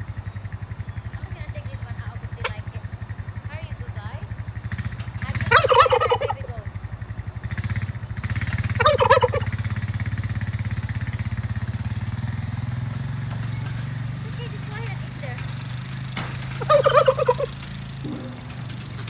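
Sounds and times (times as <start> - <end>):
engine running with pulsing hum: 0.0 - 19.0
turkey gobbling: 2.2 - 2.9, 5.2 - 6.7, 8.5 - 10.0, 11.6 - 19.0.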